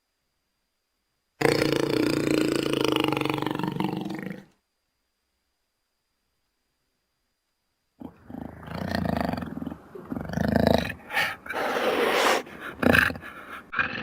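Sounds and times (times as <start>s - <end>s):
jaguar growling and snarling: 8.0s - 14.0s.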